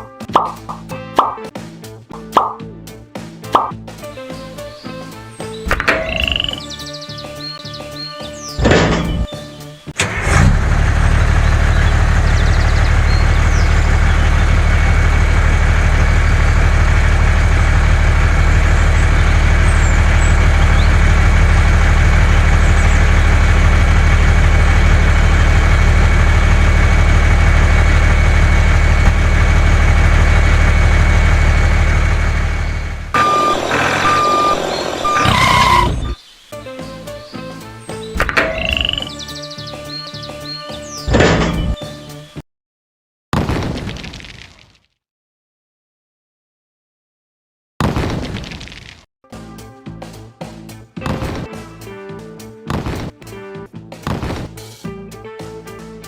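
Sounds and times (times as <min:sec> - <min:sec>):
diesel truck engine rumbling: 0:03.9 - 0:36.2, 0:38.1 - 0:42.0.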